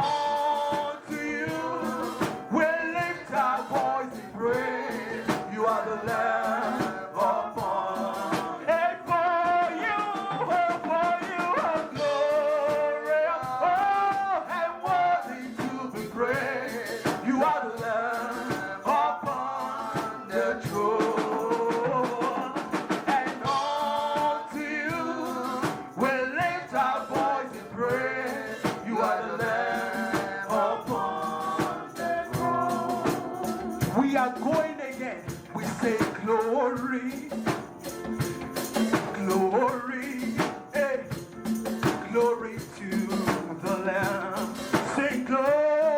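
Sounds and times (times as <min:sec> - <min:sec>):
drums: 0:00.0 - 0:45.9
guitar: 0:00.0 - 0:45.9
voices singing praise song: 0:00.0 - 0:45.9.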